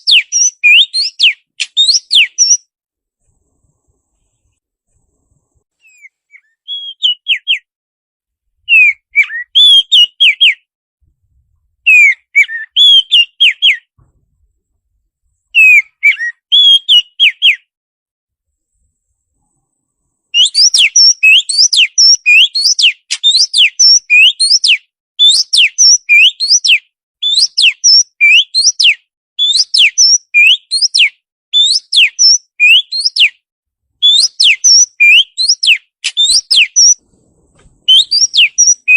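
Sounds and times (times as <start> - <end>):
songbird whistling: 0.0 - 2.7, 5.8 - 7.7, 8.7 - 10.7, 11.8 - 14.0, 15.5 - 17.7, 20.3 - 33.4, 34.0 - 38.9.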